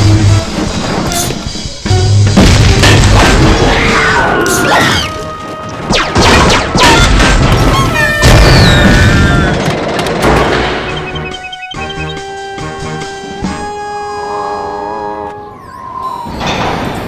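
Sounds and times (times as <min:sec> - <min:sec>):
music: 0:00.0 - 0:16.1
cartoon booms and crashes: 0:02.3 - 0:04.3, 0:05.9 - 0:09.6.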